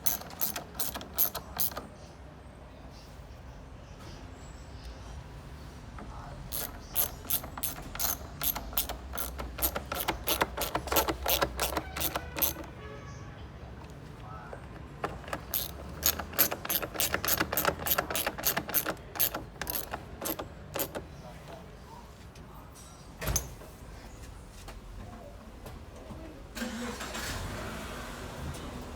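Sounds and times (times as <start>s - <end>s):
hand ratchet clicking rapidly: 0.0s - 1.8s, 6.5s - 12.8s, 15.0s - 21.1s.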